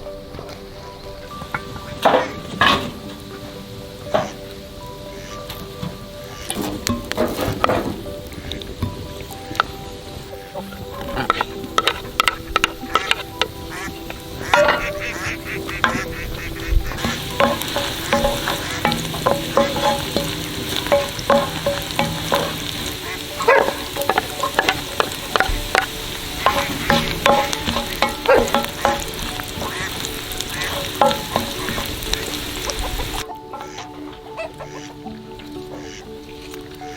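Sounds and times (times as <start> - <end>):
food sizzling in a pan: 1.5 - 34.0
utensil scraping a pan: 14.5 - 33.2.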